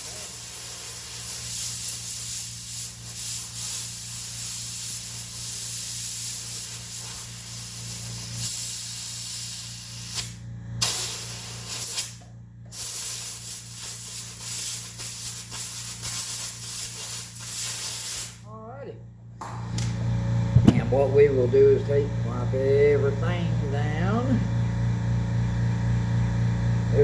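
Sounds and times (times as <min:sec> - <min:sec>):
hissing spray: 0:00.0 - 0:18.4
low hum: 0:18.4 - 0:27.0.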